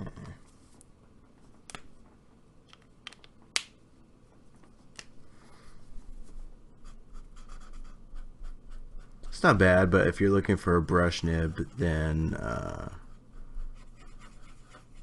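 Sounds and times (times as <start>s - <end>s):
marker nib scratching paper: 6.8s - 9.1s, 13.5s - 15.0s.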